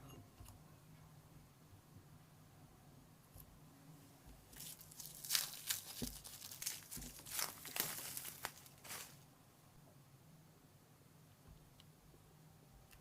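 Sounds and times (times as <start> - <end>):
crinkly tearing and rustling: 4.5 - 9.2.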